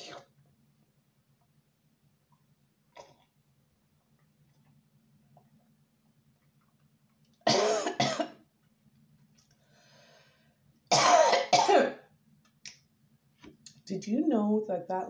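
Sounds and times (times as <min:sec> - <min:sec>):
person coughing hard: 0:07.5 - 0:08.4, 0:10.9 - 0:12.0.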